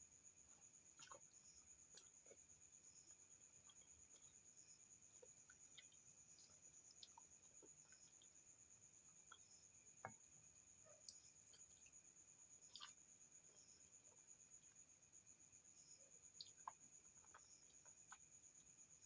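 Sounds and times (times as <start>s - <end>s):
soft mouth clicks while chewing: 0.9s - 2.4s, 5.1s - 9.5s, 12.6s - 13.0s, 16.3s - 18.4s.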